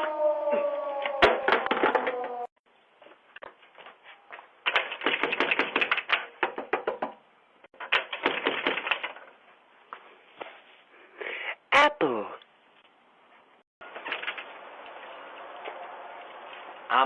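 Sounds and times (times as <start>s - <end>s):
rapid clattering taps and knocks: 4.6s - 7.2s, 7.8s - 9.3s.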